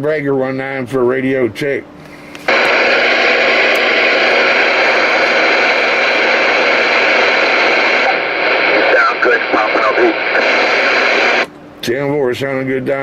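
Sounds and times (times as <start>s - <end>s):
radio static hiss: 2.5s - 11.5s.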